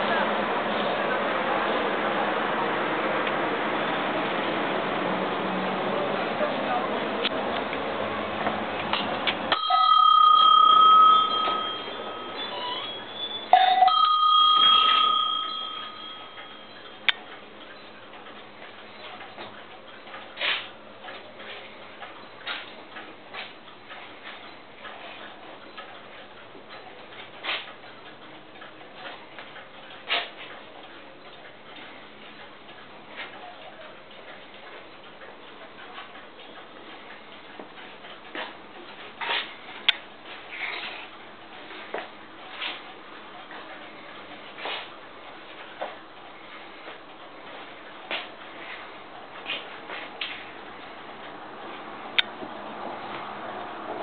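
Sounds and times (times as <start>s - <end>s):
ringing clock chimes: 9.5s - 17.9s
clocks ticking: 9.5s - 52.4s.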